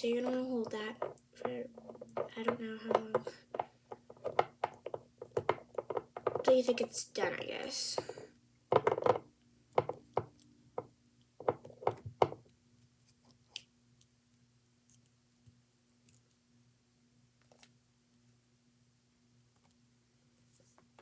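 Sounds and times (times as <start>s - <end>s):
light sharp knocks and clicks: 0.0s - 6.7s.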